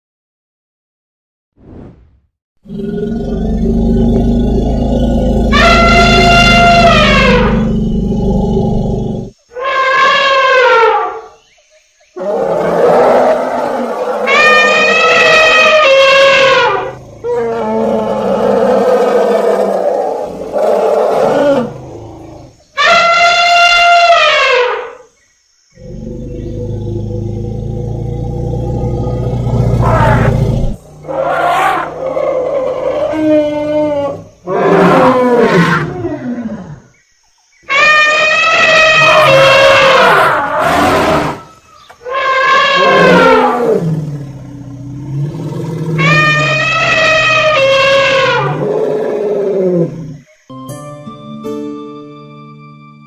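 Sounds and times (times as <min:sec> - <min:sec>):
elephant low rumble: 0:02.6 - 0:09.4, 0:25.8 - 0:33.5
elephant trumpeting: 0:05.4 - 0:07.9, 0:09.5 - 0:11.3, 0:12.2 - 0:21.8, 0:22.8 - 0:25.0, 0:29.0 - 0:35.9, 0:37.7 - 0:44.0, 0:45.9 - 0:49.8.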